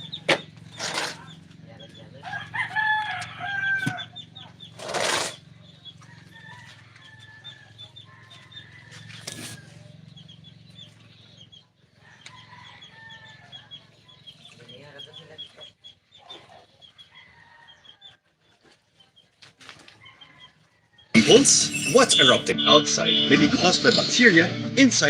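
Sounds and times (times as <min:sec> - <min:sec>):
chickens clucking: 0:00.0 - 0:24.0
short high chirps: 0:21.2 - 0:23.3.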